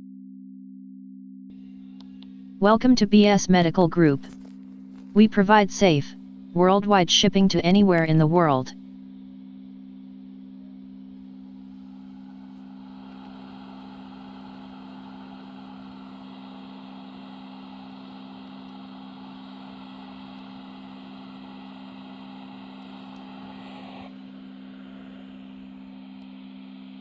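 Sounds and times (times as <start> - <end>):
steady low hum: 1.7 - 27.0
blower rush of air: 11.9 - 27.0.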